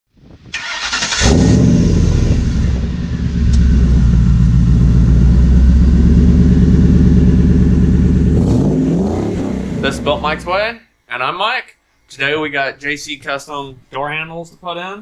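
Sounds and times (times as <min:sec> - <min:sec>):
truck engine starting and idling: 0:00.5 - 0:10.6.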